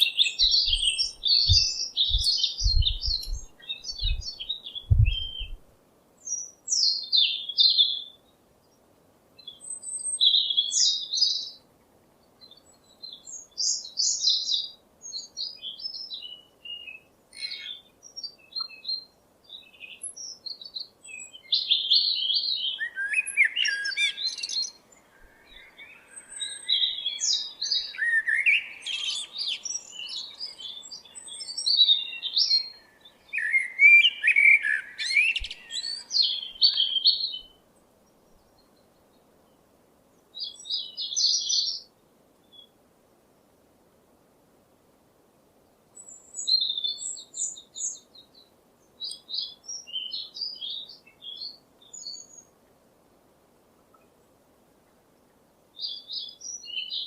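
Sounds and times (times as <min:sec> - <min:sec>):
songbird chirping and twittering: 0:00.0 - 0:43.6, 0:45.6 - 0:52.9, 0:53.6 - 0:57.0
low thumps: 0:01.4 - 0:04.3, 0:04.9 - 0:05.6.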